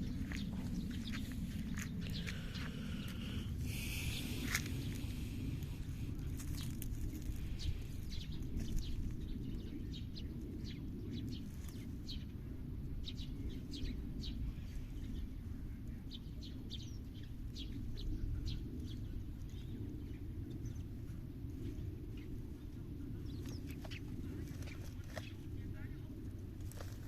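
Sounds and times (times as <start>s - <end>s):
low background rumble: 0.0s - 27.0s
small birds chirping: 0.0s - 27.0s.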